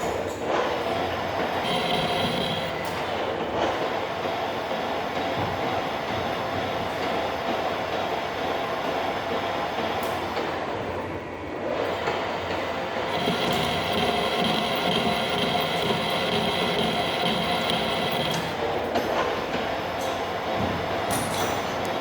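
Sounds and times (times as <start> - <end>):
metal lathe running: 1.6 - 3.2, 13.0 - 18.9
steady high whine: 1.6 - 3.2, 13.0 - 18.9.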